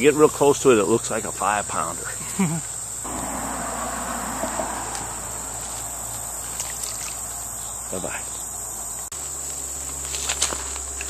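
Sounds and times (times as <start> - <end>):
insect chorus drone: 0.0 - 11.0
running creek water: 5.6 - 8.8.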